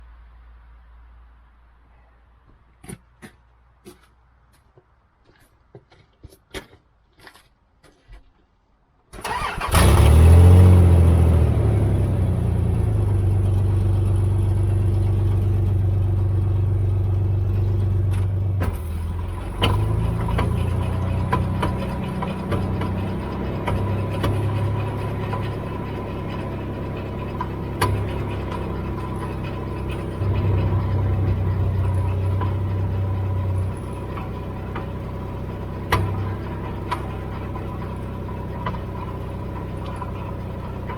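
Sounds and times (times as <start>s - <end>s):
car engine starting and idling: 9.1s - 40.9s
sharp engine knocks: 17.5s - 40.9s.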